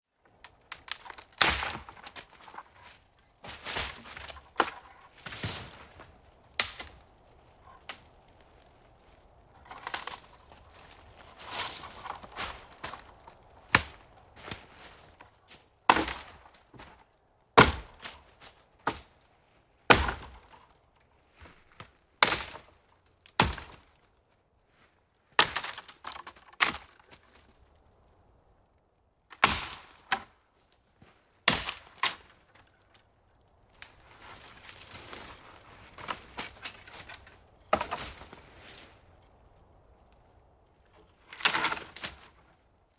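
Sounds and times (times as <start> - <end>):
crackling and rustling: 0.2 - 15.6, 30.0 - 42.9
footsteps crunching on forest ground: 0.5 - 17.1, 33.8 - 40.2.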